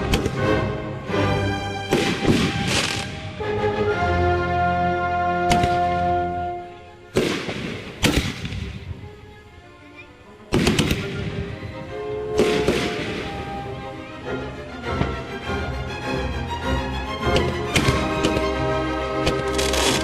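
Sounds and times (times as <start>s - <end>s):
background music: 0.0s - 20.0s
fireworks bursting: 1.8s - 3.3s, 7.1s - 9.0s, 10.5s - 11.5s, 12.3s - 13.8s, 19.2s - 20.0s.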